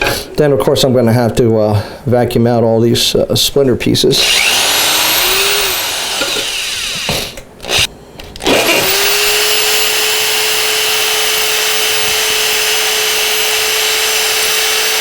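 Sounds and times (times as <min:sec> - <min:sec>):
electric drill boring wood: 0:04.2 - 0:15.0.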